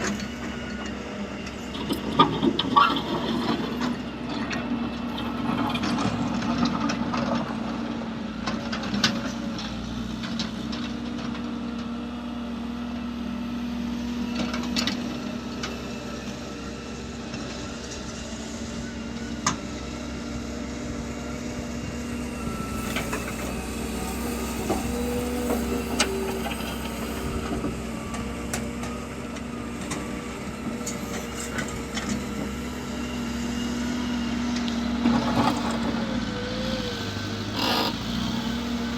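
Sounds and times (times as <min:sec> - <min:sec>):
vehicle engine running: 0:21.8 - 0:38.9.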